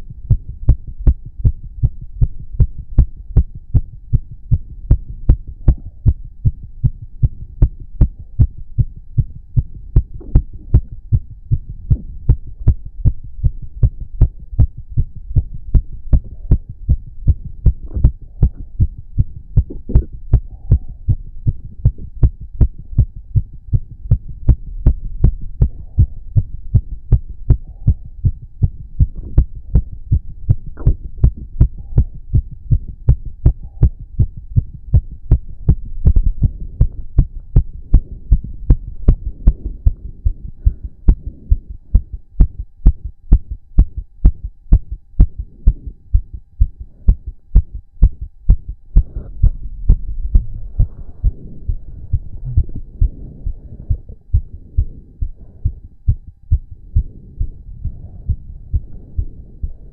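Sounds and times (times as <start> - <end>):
heart beating fast: 0.0 - 59.9
faint stomach gurgles: 19.6 - 22.1.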